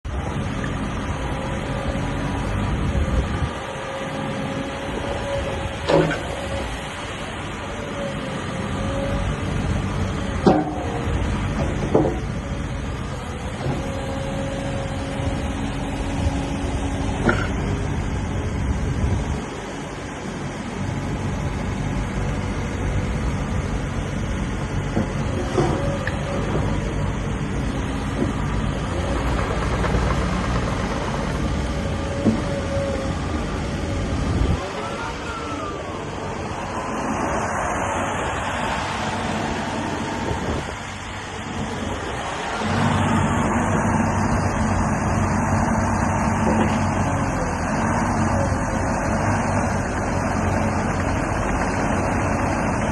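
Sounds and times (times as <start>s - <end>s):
excavator diesel engine running: 0.0s - 52.9s
broad rushing noise: 33.1s - 52.9s.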